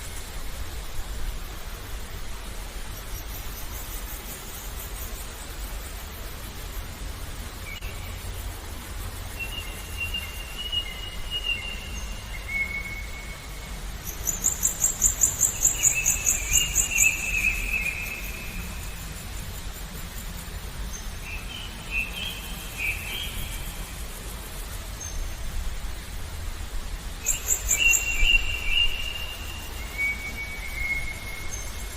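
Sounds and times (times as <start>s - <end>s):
low background hiss: 0.0s - 31.9s
birds whistling: 27.2s - 31.9s.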